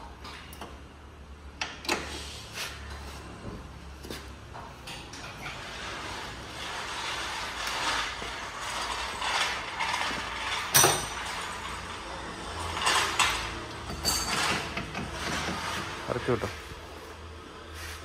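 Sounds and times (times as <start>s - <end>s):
tools ratcheting and rasping: 5.2s - 16.2s.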